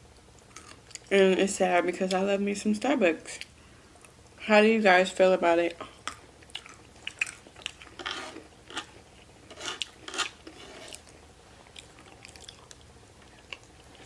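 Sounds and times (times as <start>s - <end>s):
chewing and biting food: 6.0s - 14.0s.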